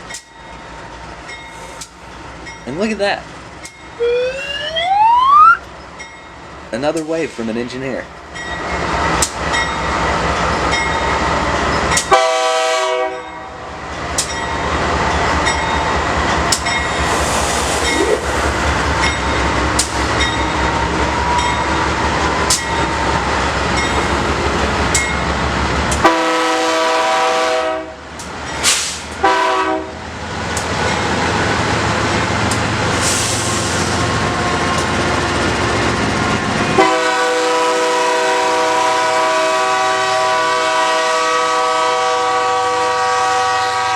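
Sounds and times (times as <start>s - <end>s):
locomotive air horn blasts: 12.1s - 13.2s, 26.0s - 28.0s, 29.2s - 29.9s, 36.8s - 43.9s.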